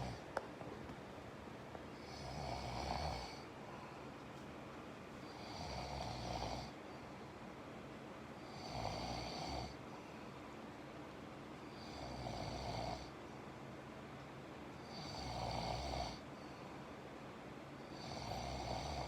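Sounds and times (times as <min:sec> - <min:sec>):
person snoring: 0:02.0 - 0:03.4.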